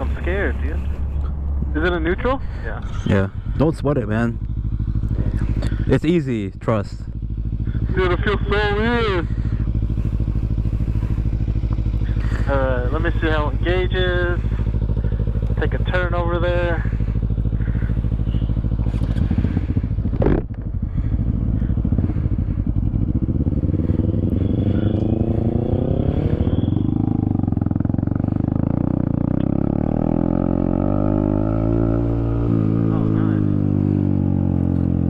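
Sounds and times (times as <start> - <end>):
motorcycle engine revving: 0.0 - 35.0.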